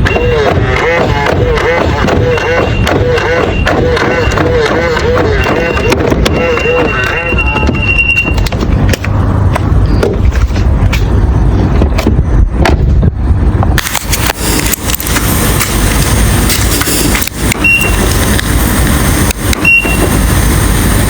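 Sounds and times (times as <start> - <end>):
car driving rumble: 0.0 - 21.0
short electronic beep: 2.2 - 8.4, 17.6 - 18.1, 19.6 - 20.1.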